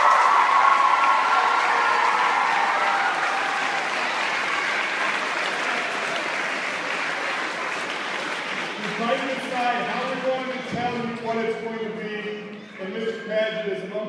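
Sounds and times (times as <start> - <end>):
crowd applauding: 0.0 - 10.7.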